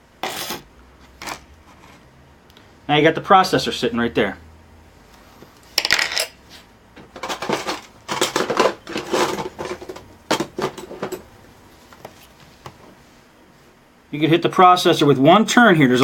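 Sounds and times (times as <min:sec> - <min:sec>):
small metal parts clinking: 0:05.8 - 0:06.4.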